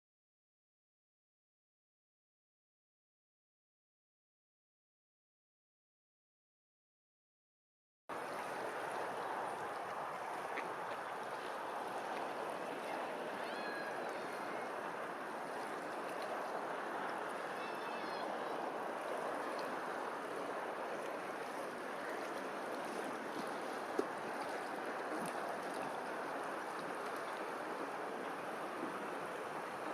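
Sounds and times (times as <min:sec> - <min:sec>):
running water rushing: 0:08.1 - 0:29.9.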